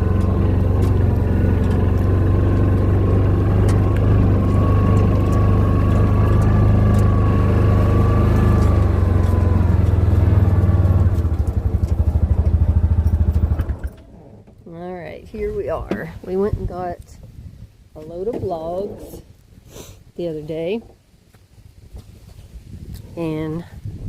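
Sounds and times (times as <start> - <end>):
vehicle engine droning with whine: 0.0 - 16.8.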